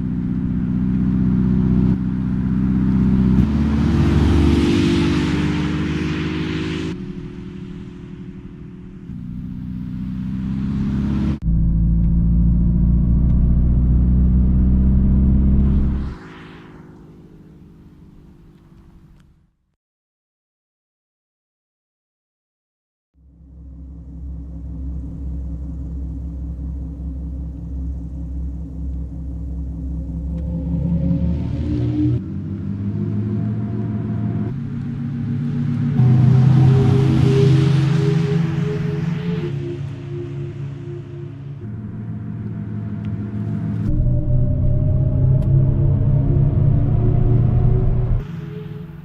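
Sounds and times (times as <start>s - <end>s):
car engine building up: 0.0s - 19.4s, 23.2s - 49.0s
steady low rumble: 6.9s - 19.3s, 23.2s - 49.0s.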